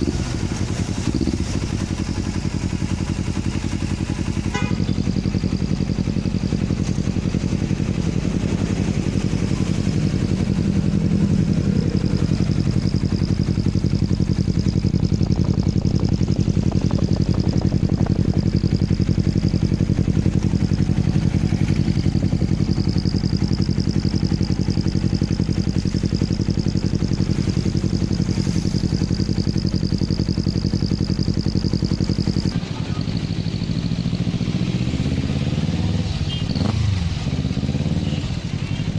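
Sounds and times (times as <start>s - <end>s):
motorcycle engine idling: 0.0s - 38.9s
high exhaust whistle: 3.8s - 5.4s.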